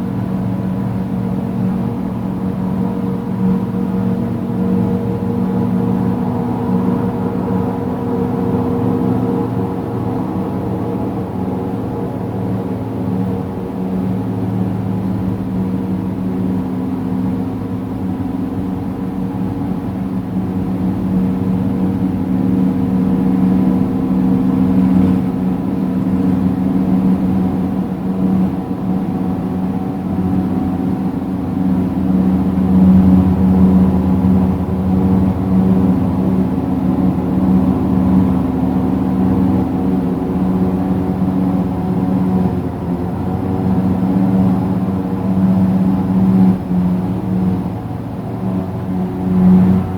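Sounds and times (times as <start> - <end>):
low droning hum: 0.0 - 49.9.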